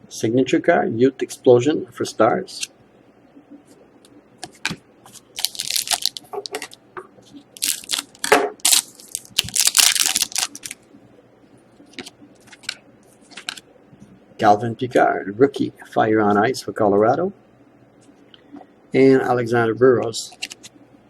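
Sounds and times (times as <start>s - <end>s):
crinkly packaging being torn: 5.4s - 6.8s, 7.6s - 10.8s.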